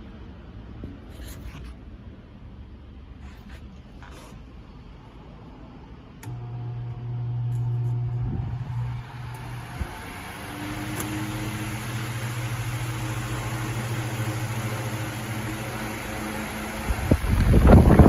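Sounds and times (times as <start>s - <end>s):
fan motor hum: 3.5s - 18.0s
rush of air from fan: 8.2s - 18.0s.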